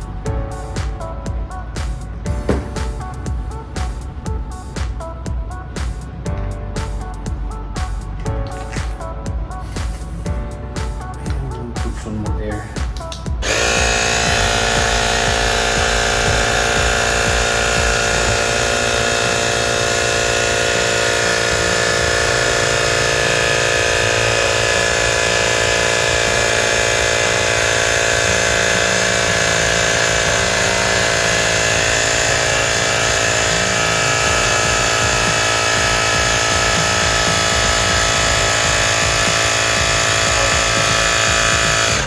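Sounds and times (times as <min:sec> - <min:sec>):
electric tire inflator humming: 0:01.8 - 0:04.1, 0:13.0 - 0:42.0.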